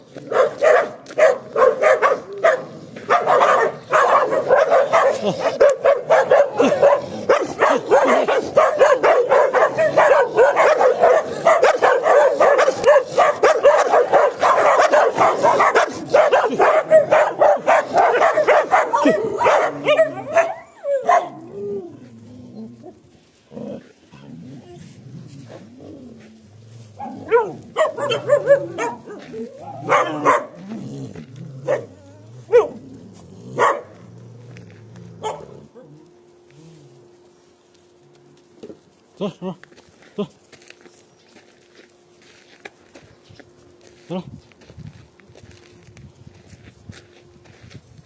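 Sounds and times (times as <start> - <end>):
dog barking rapidly: 0.3 - 21.4, 27.0 - 30.6, 33.6 - 33.9, 35.2 - 35.5.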